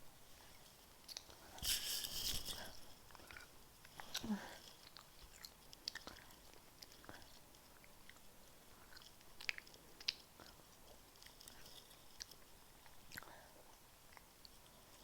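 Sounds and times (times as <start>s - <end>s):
person chewing with wet clicks: 1.0s - 1.5s, 3.1s - 15.0s.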